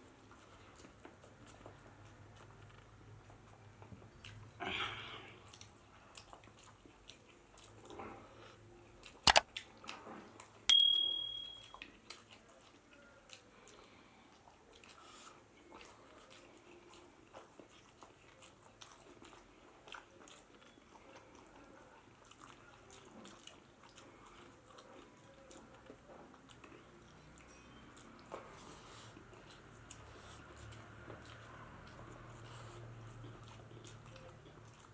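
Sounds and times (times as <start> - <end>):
wet chewing clicks: 5.4 - 8.3, 8.9 - 10.6, 11.7 - 34.9
sharp ringing clink: 10.7 - 11.8.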